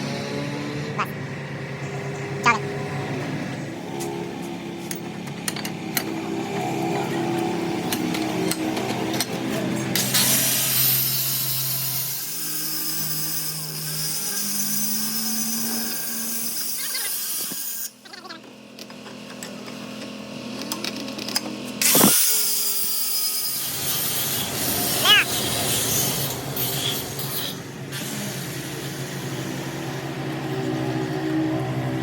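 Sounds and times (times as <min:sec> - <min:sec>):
power tool running: 0:21.8 - 0:27.2.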